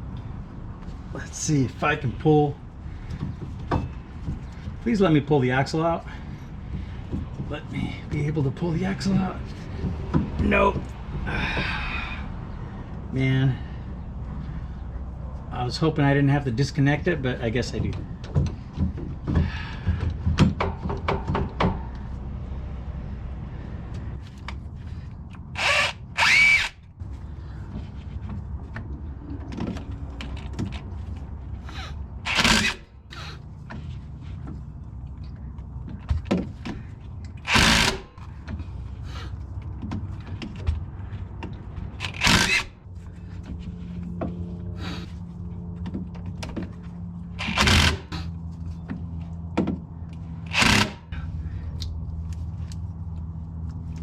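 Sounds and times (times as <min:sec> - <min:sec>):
steady low hum: 0:00.0 - 0:54.0
impact wrench bursts: 0:25.6 - 0:26.8, 0:31.6 - 0:33.4, 0:37.4 - 0:38.3, 0:42.0 - 0:42.8, 0:47.4 - 0:48.3, 0:50.4 - 0:51.3.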